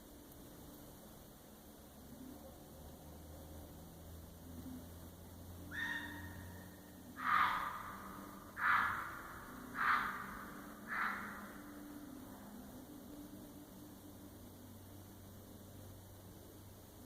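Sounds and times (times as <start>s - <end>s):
animal calling: 5.7s - 11.9s.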